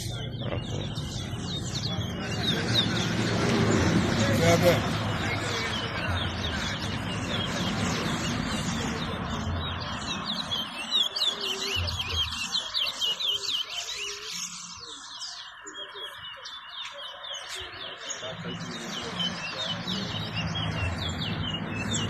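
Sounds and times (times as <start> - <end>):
finch singing warbled chirps: 0.0 - 22.0.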